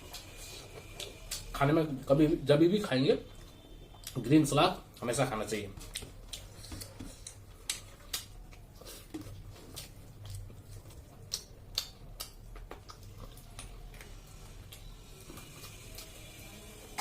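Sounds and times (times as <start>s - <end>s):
chewing and mouth noises: 5.8s - 17.0s.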